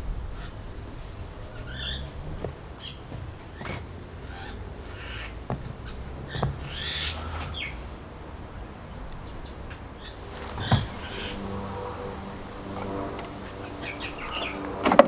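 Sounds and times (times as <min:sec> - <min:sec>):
birds chirping: 0:00.0 - 0:15.0
sharp knocks: 0:10.4 - 0:13.4.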